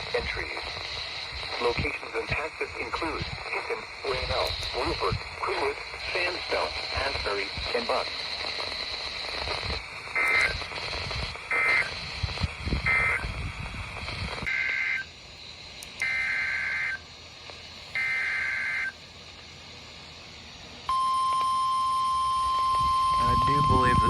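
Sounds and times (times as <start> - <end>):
buzzing two-tone data bursts: 0.0 - 15.2, 18.0 - 19.0, 20.9 - 24.0
radio static and crackle: 0.0 - 21.6, 22.4 - 24.0.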